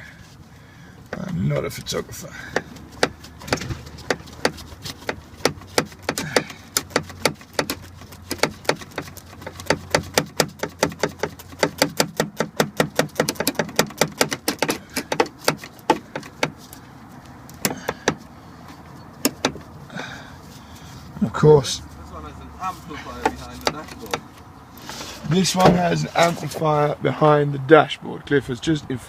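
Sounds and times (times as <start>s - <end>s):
ratchet clicking: 2.6s - 16.8s.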